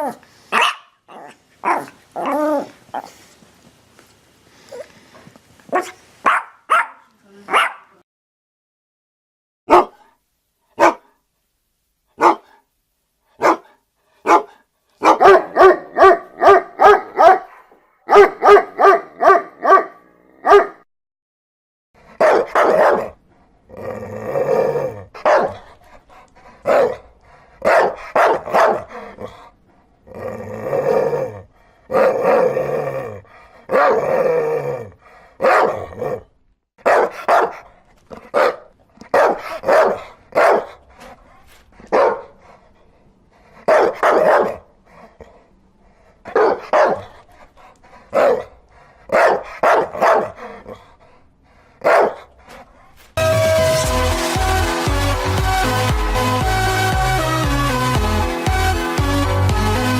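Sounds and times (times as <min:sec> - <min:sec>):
dog barking: 0:00.0 - 0:02.4, 0:05.7 - 0:08.0, 0:09.7 - 0:10.2, 0:10.8 - 0:11.2, 0:12.2 - 0:12.7, 0:13.4 - 0:20.8, 0:22.1 - 0:23.2, 0:25.2 - 0:25.7, 0:26.6 - 0:27.0, 0:27.6 - 0:29.2, 0:33.7 - 0:34.0, 0:35.4 - 0:35.9, 0:36.8 - 0:40.8, 0:41.9 - 0:42.4, 0:43.6 - 0:44.7, 0:46.3 - 0:47.2, 0:48.1 - 0:48.5, 0:49.1 - 0:50.8, 0:51.8 - 0:52.3.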